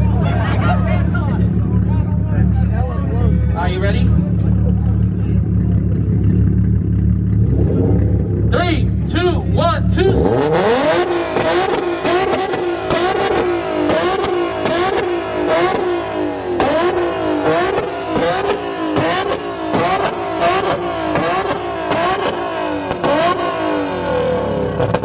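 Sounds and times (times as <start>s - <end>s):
car engine on rev limiter: 0.0s - 25.0s
exhaust pops and bangs: 24.7s - 25.0s.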